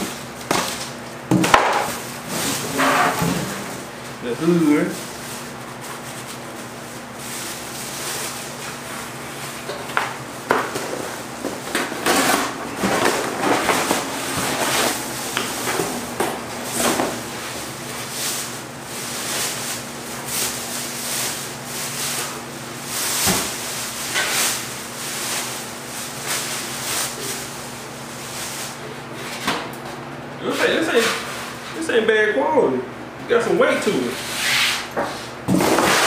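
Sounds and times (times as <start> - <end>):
packaging rustling and scraping: 10.6 - 27.6.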